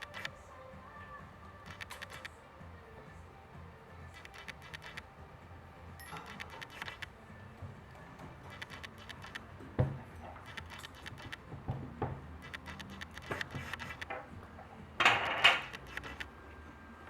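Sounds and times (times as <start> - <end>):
small clicks and taps: 7.9 - 11.8, 12.4 - 14.2, 15.4 - 16.3.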